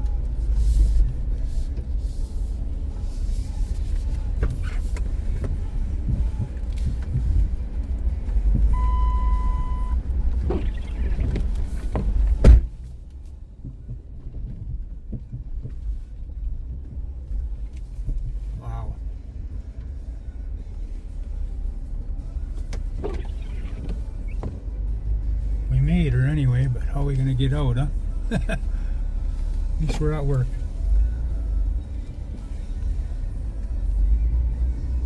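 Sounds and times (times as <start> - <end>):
van rumbling through snow: 0.0 - 35.0
steady beep: 8.7 - 10.0
knocks and bumps: 10.4 - 13.0
loud thump: 12.0 - 12.8.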